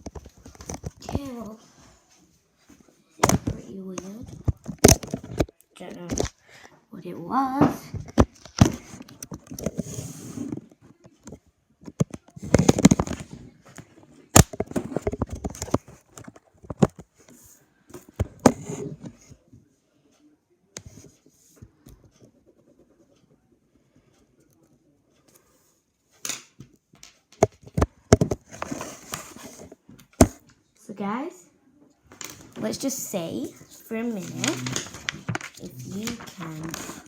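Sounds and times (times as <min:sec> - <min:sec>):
rustling and scraping: 0:07.7 - 0:19.4, 0:27.6 - 0:30.4, 0:32.1 - 0:37.0.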